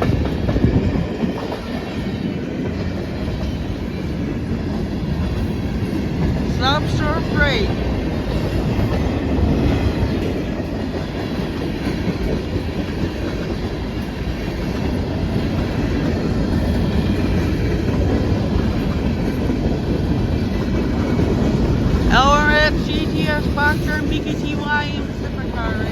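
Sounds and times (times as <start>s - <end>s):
freight train wheels rumbling: 0.0s - 25.9s.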